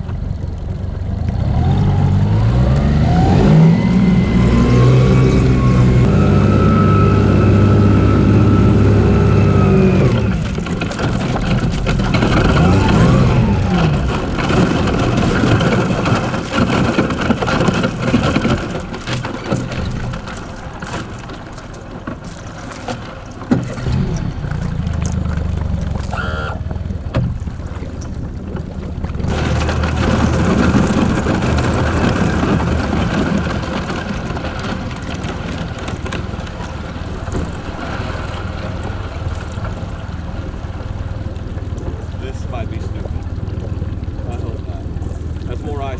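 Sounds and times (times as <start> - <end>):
boat motor running: 0.0 - 45.9
ice crunching and cracking: 10.0 - 26.7, 29.2 - 45.9.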